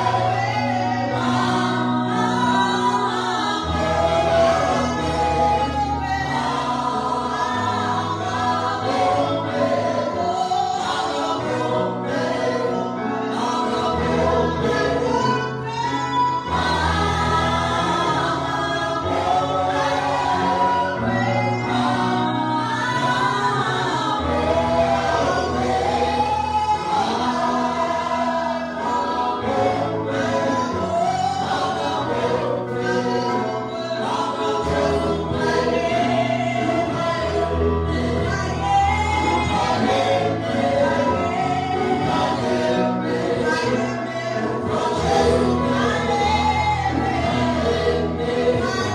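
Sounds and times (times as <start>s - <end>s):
gospel choir singing: 0.0s - 48.9s
instrumental backing with bass: 0.0s - 48.9s.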